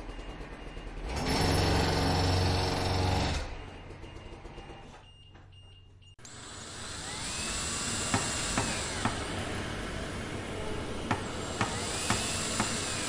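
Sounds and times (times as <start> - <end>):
heavy machinery engine: 0.0 - 5.0, 6.3 - 13.0
machine sound: 6.2 - 13.0.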